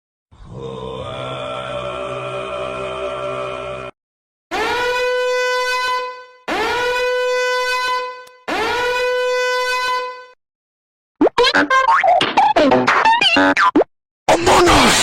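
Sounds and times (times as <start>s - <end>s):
meme horn blasts: 4.5s - 10.4s.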